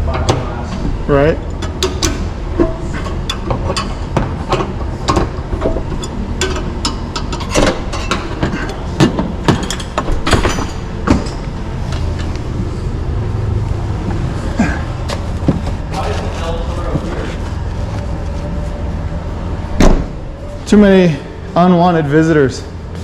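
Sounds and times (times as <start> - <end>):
steady low hum: 0.0 - 23.0
metallic clanks and knocks: 1.5 - 12.5.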